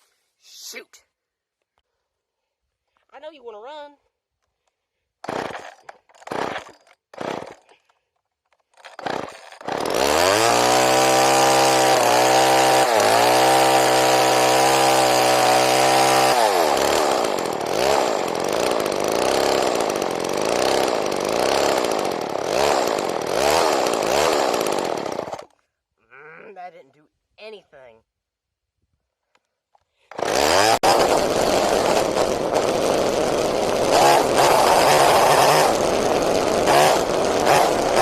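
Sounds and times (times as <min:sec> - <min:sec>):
starter cord tugs: 0:04.4 - 0:25.6, 0:29.8 - 0:38.0
chainsaw engine running: 0:05.2 - 0:08.0, 0:08.7 - 0:25.6, 0:30.1 - 0:38.0.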